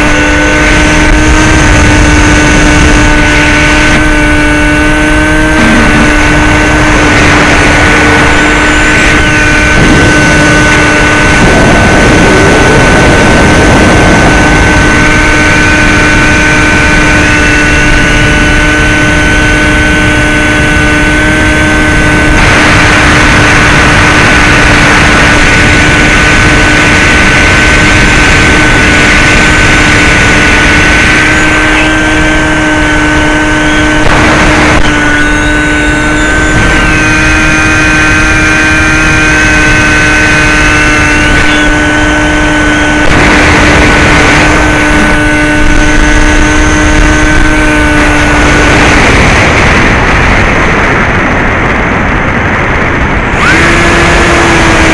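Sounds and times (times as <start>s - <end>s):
electric motor high whine: 0.0s - 54.9s
air rush over microphone: 5.6s - 16.4s.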